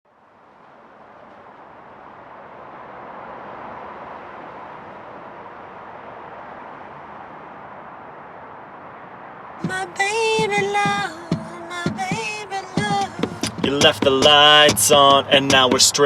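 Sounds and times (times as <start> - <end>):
rushing outdoor background noise: 0.1 - 16.0.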